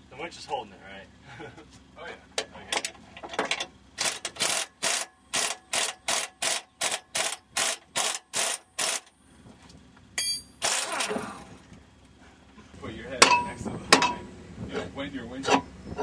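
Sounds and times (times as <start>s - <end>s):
hand ratchet clicking: 4.0s - 9.1s
short metallic ring: 10.2s - 10.6s.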